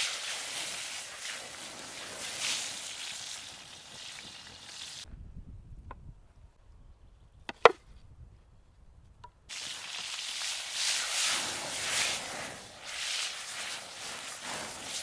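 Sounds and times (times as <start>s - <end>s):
crackly hiss: 0.0s - 5.0s, 9.5s - 15.0s.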